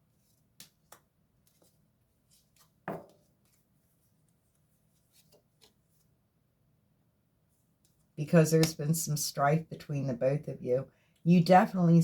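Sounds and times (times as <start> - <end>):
cards tapping and clicking on table: 2.6 - 3.3.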